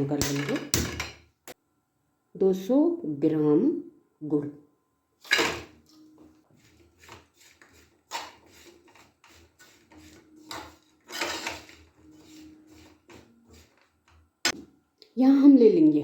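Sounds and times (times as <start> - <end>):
scraping in a pan: 5.2 - 14.3.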